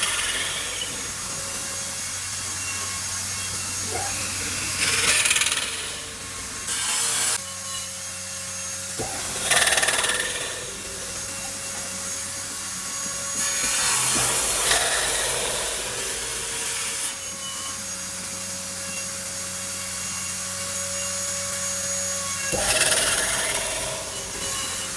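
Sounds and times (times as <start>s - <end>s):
motor hum: 0.0s - 7.4s, 9.0s - 17.1s, 22.0s - 24.9s
power tool rasping wood: 0.0s - 24.9s.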